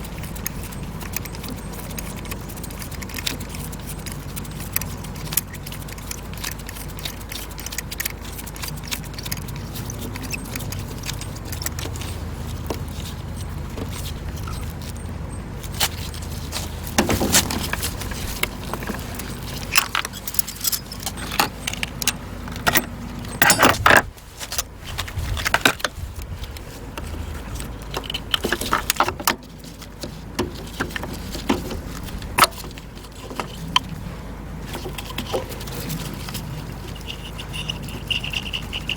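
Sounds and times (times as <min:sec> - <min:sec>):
metal hand tools clicking: 0:17.4 - 0:24.1, 0:36.9 - 0:38.9
ringing metallic clinks: 0:19.0 - 0:24.0, 0:36.9 - 0:38.9.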